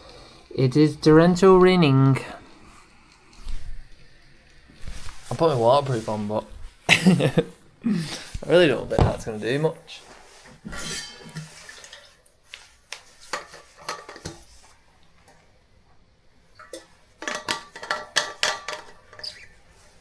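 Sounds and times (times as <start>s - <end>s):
clicks and knocks of handling: 16.6s - 19.4s.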